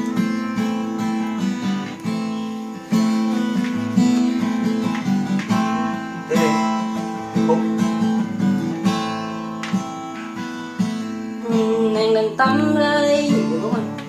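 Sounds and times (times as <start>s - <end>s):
acoustic guitar strumming chords: 0.0s - 14.0s
person singing: 5.5s - 9.2s, 11.4s - 14.0s.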